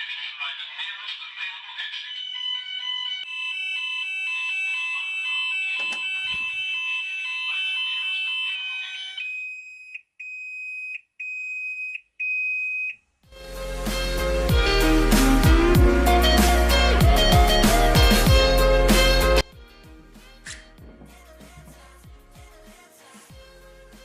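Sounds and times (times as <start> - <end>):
fire alarm sounder tone: 2.2 - 13.0
loud guitar music: 13.4 - 21.7.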